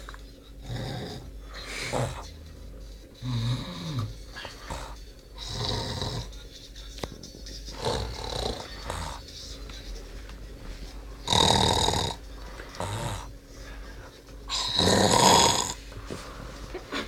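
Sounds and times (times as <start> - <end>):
man snoring loudly: 0.6 - 2.5, 3.2 - 6.4, 7.7 - 9.4, 11.2 - 13.3, 14.5 - 15.8.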